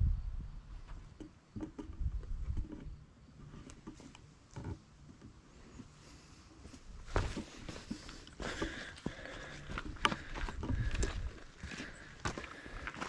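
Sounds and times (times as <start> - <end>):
footsteps on rocky trail: 6.6 - 13.0.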